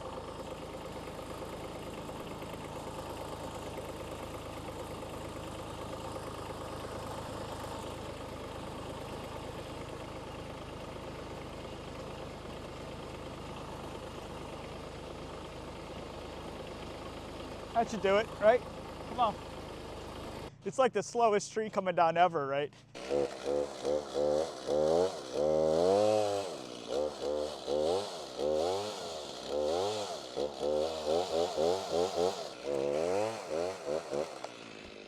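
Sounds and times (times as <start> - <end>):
vehicle engine idling: 0.0 - 20.6.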